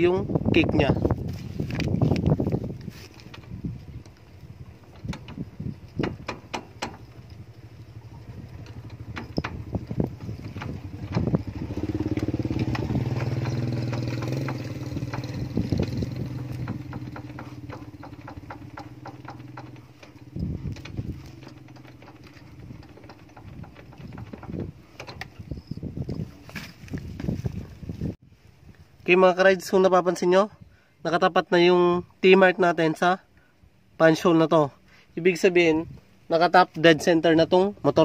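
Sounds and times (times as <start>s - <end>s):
motorcycle engine hum: 0.0s - 28.2s.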